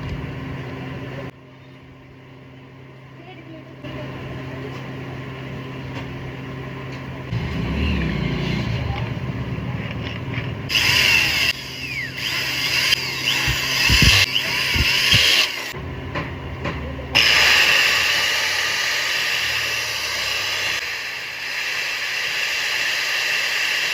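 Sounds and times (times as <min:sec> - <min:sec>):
electric grinder running: 0:10.7 - 0:15.8, 0:17.2 - 0:23.9.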